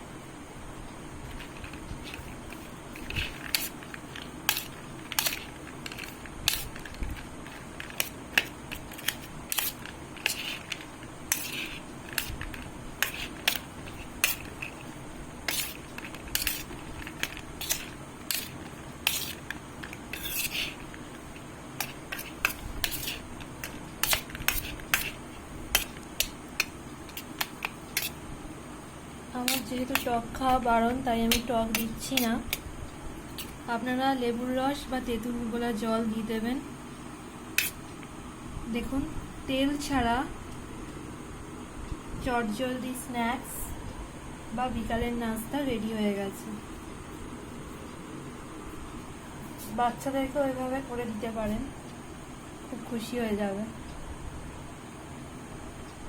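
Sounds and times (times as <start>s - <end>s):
puffed rice rustling: 1.3s - 28.2s.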